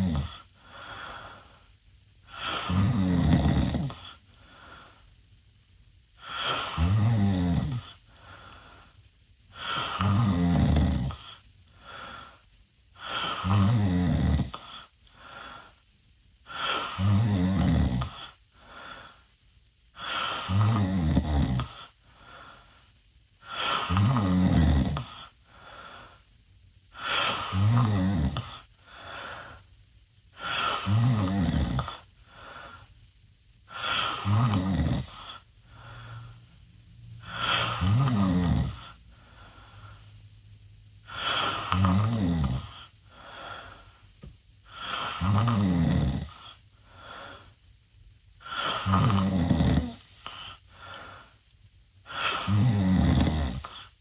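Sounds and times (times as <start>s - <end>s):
boy snoring loudly: 0.0s - 0.5s, 2.3s - 4.2s, 6.2s - 8.0s, 9.6s - 11.4s, 13.0s - 14.9s, 16.5s - 18.4s, 20.0s - 21.9s, 23.5s - 25.3s, 27.0s - 28.7s, 30.4s - 32.1s, 33.7s - 35.4s, 37.2s - 39.0s, 41.1s - 42.9s, 44.7s - 46.6s, 48.4s - 50.4s, 52.1s - 53.9s
soft breath: 7.9s - 10.0s, 21.8s - 23.8s, 25.2s - 27.5s, 31.8s - 33.1s, 35.2s - 38.0s, 38.8s - 41.8s, 42.6s - 45.3s, 46.4s - 47.8s, 50.0s - 52.5s.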